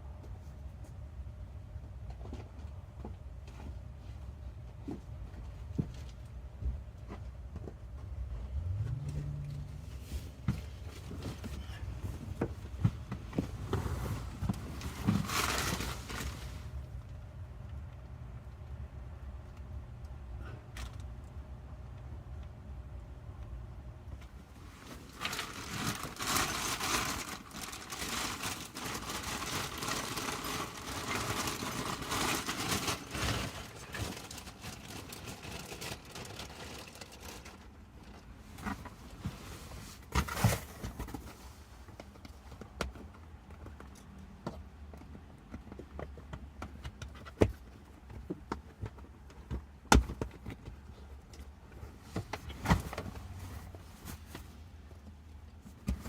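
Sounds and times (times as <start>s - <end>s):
rustling of seat fabric: 8.4s - 16.8s, 24.2s - 42.5s, 50.9s - 56.0s.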